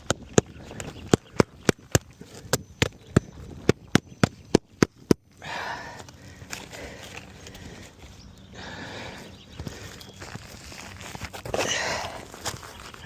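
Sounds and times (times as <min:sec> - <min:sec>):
rustling and scuffing on roof: 0:09.5 - 0:13.0.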